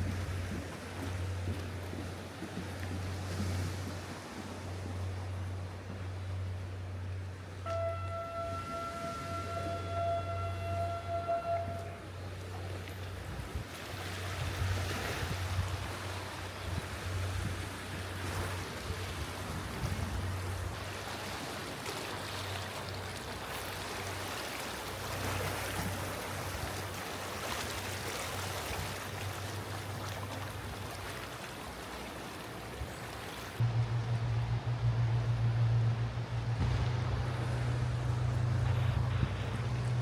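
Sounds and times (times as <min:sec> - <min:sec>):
waves washing on rocky shore: 0:00.0 - 0:06.0
low engine hum: 0:00.0 - 0:31.8, 0:33.1 - 0:40.0.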